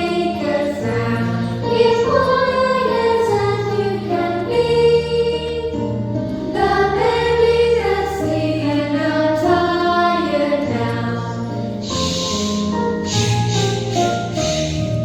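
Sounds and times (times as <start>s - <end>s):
voices singing: 0.0s - 5.8s
instrumental accompaniment: 0.0s - 15.0s.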